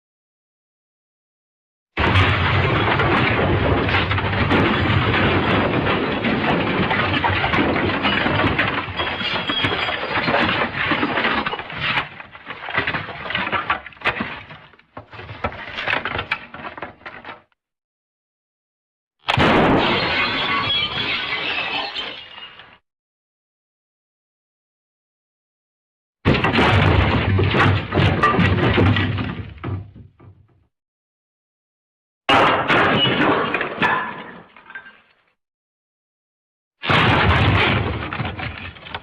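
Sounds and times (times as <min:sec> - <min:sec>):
loud breaking crash: 0:02.0 - 0:14.5, 0:19.3 - 0:22.8, 0:26.3 - 0:29.8, 0:32.3 - 0:34.5, 0:36.8 - 0:39.0
clattering debris: 0:02.0 - 0:17.6, 0:19.3 - 0:22.8, 0:26.3 - 0:30.3, 0:32.3 - 0:35.2, 0:36.8 - 0:39.0.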